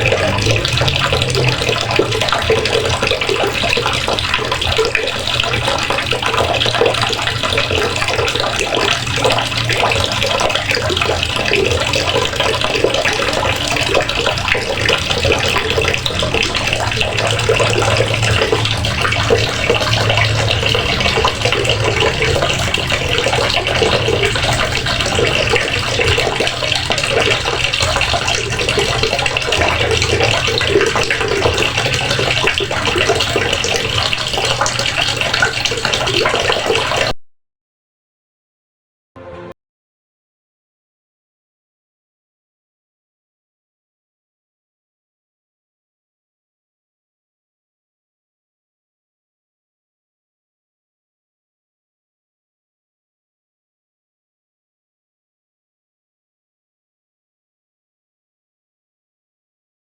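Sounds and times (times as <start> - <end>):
water running from a faucet: 0.0 - 37.2.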